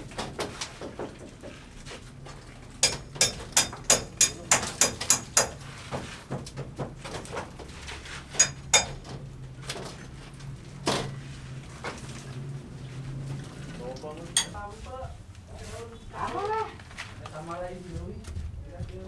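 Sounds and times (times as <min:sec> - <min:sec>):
sharp ringing tool strikes: 0:08.4 - 0:09.0.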